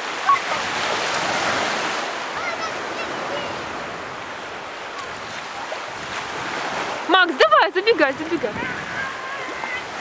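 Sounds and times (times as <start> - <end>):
surf breaking on shore: 0.0 - 10.0.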